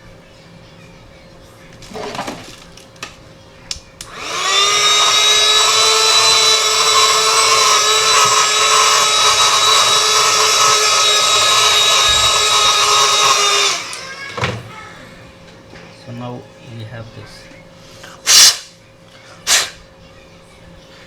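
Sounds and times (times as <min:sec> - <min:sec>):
electric motor tool whining: 0:04.0 - 0:14.7.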